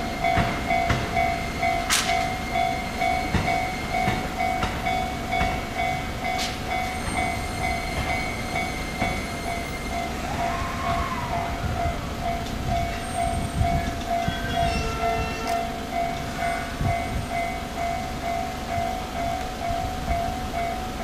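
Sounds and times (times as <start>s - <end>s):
train wheels clacking over rail joints: 0.0s - 11.1s
electric train rolling past: 0.0s - 21.0s
level-crossing warning bell: 0.0s - 21.0s.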